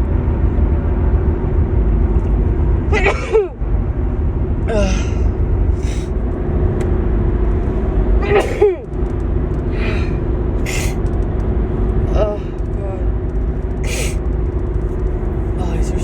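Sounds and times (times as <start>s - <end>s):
steady low hum: 0.0s - 16.0s
woman sneezing: 8.2s - 8.8s
breathy sniffs: 13.9s - 14.2s.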